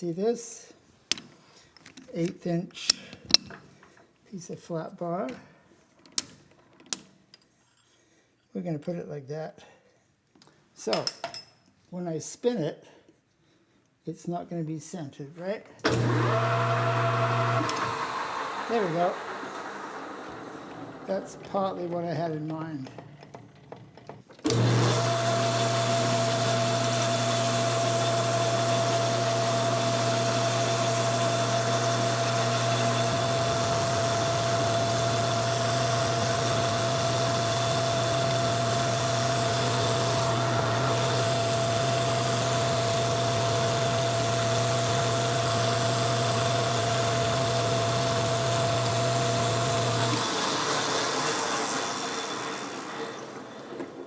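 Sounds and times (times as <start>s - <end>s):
lathe spinning down: 15.8s - 54.0s
metal lathe humming and whining: 15.9s - 54.0s.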